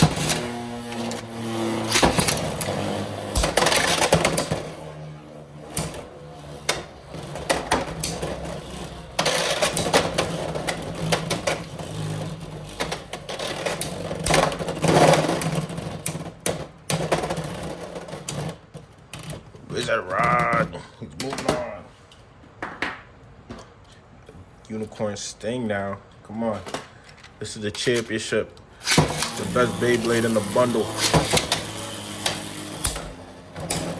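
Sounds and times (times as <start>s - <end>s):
spinning tops whirring: 0.0s - 16.4s, 28.8s - 33.9s
spinning tops clacking together: 1.6s - 4.7s, 28.8s - 33.9s.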